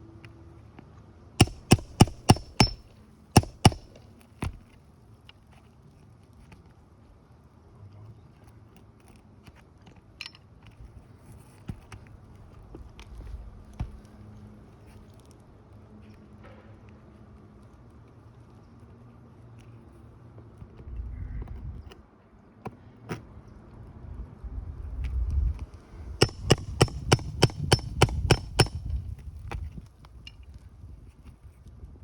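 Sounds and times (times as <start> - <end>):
hammer striking metal: 1.4 - 4.0, 26.2 - 28.9.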